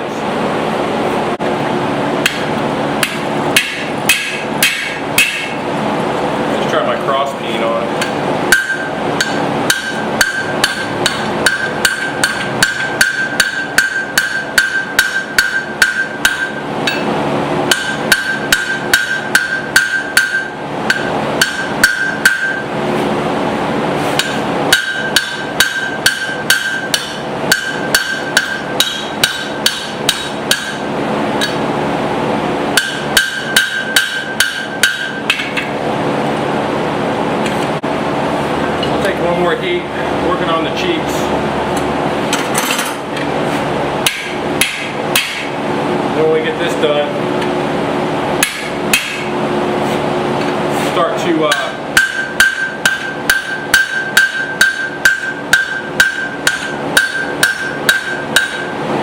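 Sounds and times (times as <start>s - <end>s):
steady hum: 0.0s - 59.0s
hammer striking steel on anvil: 2.2s - 5.6s, 8.0s - 22.7s, 24.2s - 31.6s, 32.7s - 35.7s, 44.0s - 45.6s, 48.4s - 49.3s, 51.5s - 58.8s.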